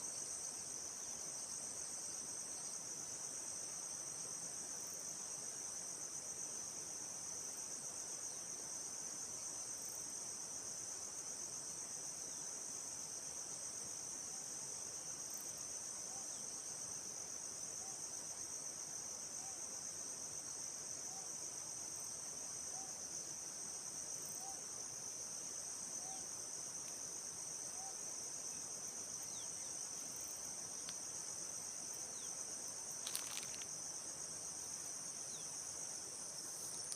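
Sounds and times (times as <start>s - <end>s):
insect chorus trilling: 19.2s - 36.9s
brief crackle: 33.0s - 33.7s.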